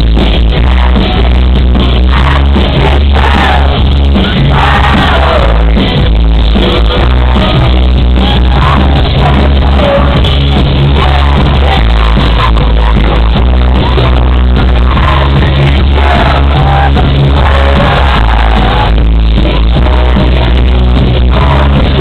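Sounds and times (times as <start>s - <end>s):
heavy bass: 0.0s - 22.0s
live electro-pop band: 0.0s - 22.0s
person singing: 0.0s - 22.0s
crowd shouting: 0.5s - 6.0s, 6.6s - 20.6s.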